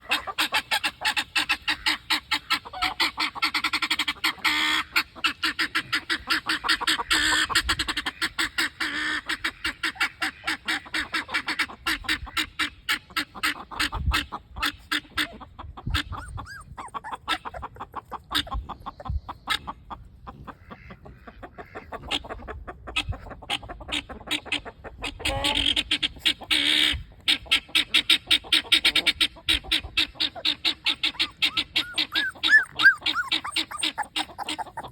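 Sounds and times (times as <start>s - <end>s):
puppies yapping: 15.2s - 19.1s, 30.2s - 34.9s.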